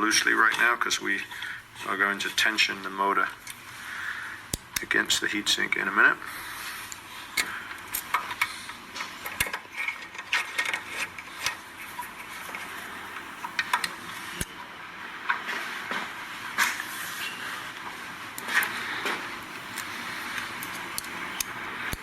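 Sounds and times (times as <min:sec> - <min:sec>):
metallic clicks and scrapes: 0:06.7 - 0:12.7, 0:18.4 - 0:22.0.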